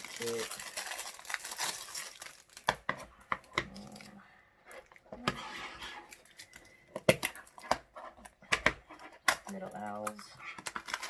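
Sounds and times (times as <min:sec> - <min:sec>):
plastic crinkling: 0:00.0 - 0:02.9, 0:09.4 - 0:11.0.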